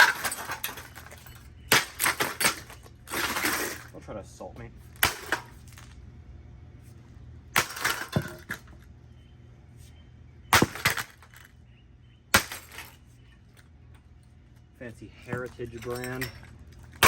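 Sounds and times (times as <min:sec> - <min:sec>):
broom handle smashing a ceiling fan: 0:00.0 - 0:03.9, 0:05.0 - 0:05.9, 0:07.6 - 0:08.7, 0:10.5 - 0:11.4, 0:12.4 - 0:13.0
breaking parts clattering: 0:00.0 - 0:04.0, 0:05.0 - 0:06.0, 0:07.6 - 0:08.8, 0:10.5 - 0:11.5, 0:12.4 - 0:13.7, 0:15.3 - 0:17.0.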